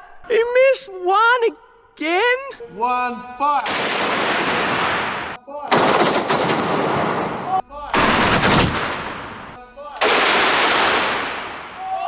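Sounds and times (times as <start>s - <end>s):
giant balloons bursting: 2.8s - 5.4s.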